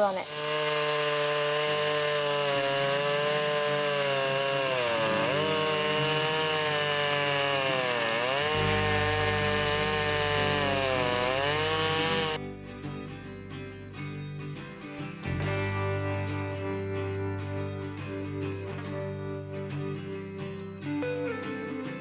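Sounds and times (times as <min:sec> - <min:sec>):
chainsaw cutting through log: 0:00.0 - 0:12.4.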